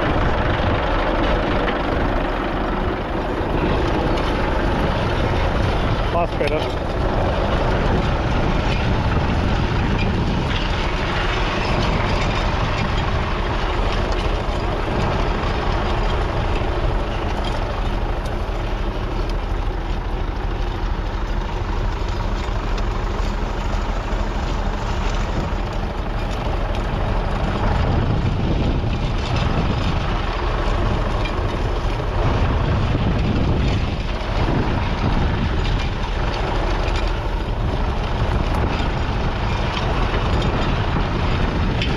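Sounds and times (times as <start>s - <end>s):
tractor diesel engine running: 0.0s - 41.9s.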